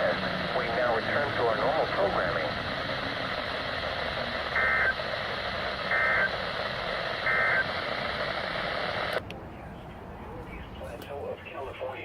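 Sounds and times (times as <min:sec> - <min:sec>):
radio static: 0:00.0 - 0:09.2, 0:10.6 - 0:12.0
warbling data bursts: 0:00.0 - 0:09.2.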